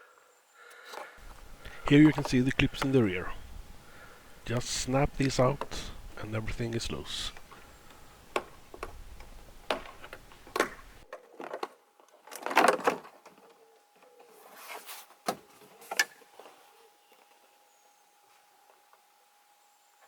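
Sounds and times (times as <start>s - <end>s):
trim panel rustling and scraping: 1.2s - 11.0s.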